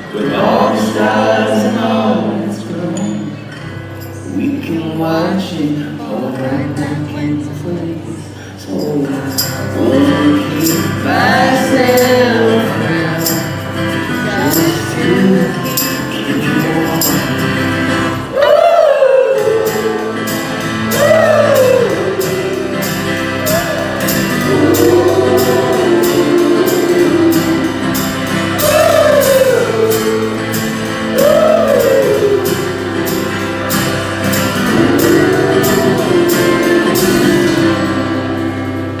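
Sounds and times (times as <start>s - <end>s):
wordless singing: 0.0s - 39.0s
high percussion beat: 8.8s - 18.3s, 19.4s - 39.0s
held chords: 8.8s - 39.0s.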